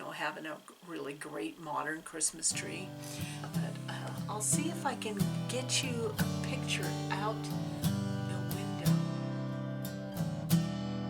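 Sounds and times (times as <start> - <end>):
acoustic guitar strumming chords: 2.5 - 11.0.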